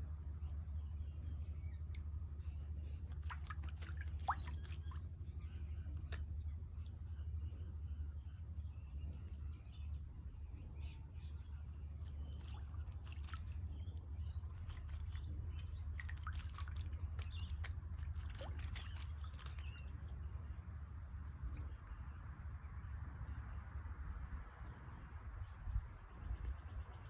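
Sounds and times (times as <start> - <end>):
bird splashing in water: 2.9 - 5.2, 12.0 - 20.0.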